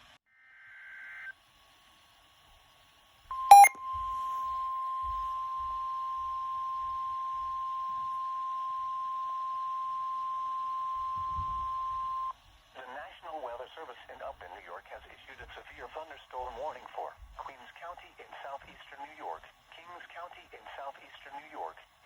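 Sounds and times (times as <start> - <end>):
steady alarm beep: 3.3 - 6.9.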